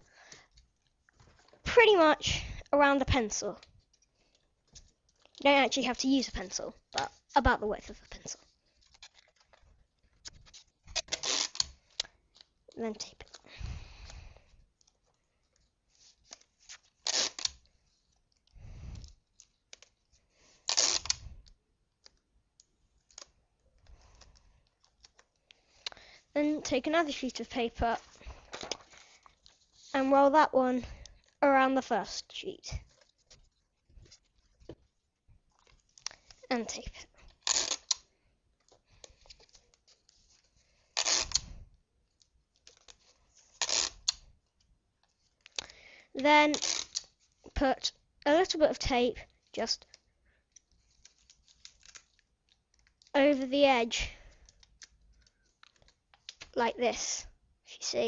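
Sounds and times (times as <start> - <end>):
paper rustling: 7.8 - 13.6, 27.1 - 30.0, 32.8 - 36.8
sticky tape ripping: 10.2 - 12.1, 16.3 - 17.7, 20.7 - 21.2, 37.4 - 38.0, 41.0 - 41.6, 43.5 - 44.2, 46.5 - 47.1
paper rustling and clicks: 28.2 - 29.7.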